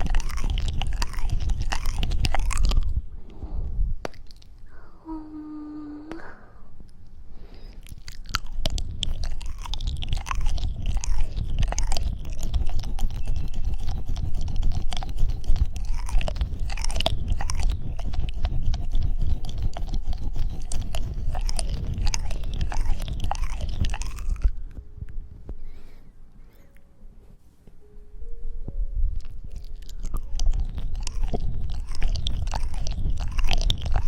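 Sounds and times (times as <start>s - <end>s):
close crackling and scrunching: 0.0s - 3.0s, 7.8s - 25.9s, 29.2s - 34.0s
low rumble: 0.0s - 26.5s, 28.0s - 34.0s.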